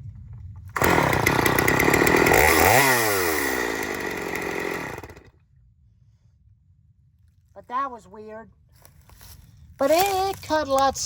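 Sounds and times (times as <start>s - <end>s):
chainsaw running and winding down: 0.8s - 5.3s.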